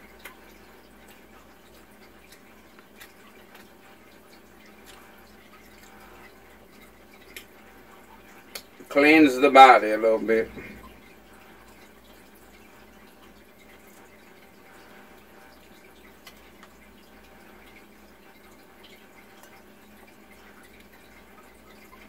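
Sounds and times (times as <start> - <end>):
person eating and chewing: 0.0 - 8.9
low steady hum: 0.0 - 22.0.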